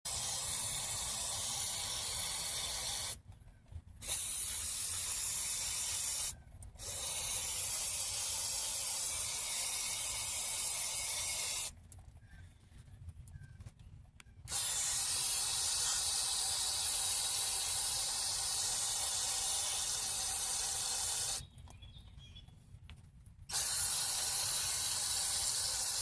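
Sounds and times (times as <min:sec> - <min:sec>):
aerosol spray hissing: 0:00.1 - 0:03.2, 0:04.0 - 0:11.7, 0:14.5 - 0:21.4, 0:23.5 - 0:26.0.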